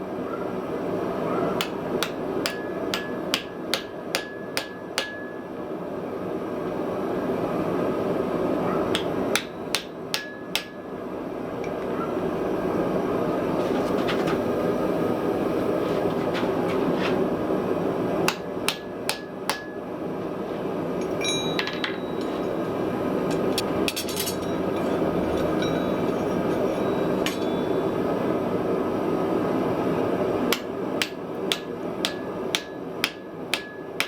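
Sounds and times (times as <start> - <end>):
steady noisy rumble: 0.0 - 34.0
hammer striking iron: 1.6 - 5.5, 8.9 - 10.9, 18.3 - 19.9, 21.0 - 28.1, 30.5 - 34.0.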